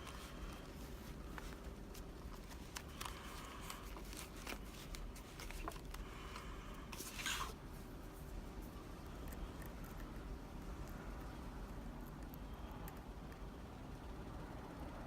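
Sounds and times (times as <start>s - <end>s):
rustling scrape: 6.9s - 8.4s.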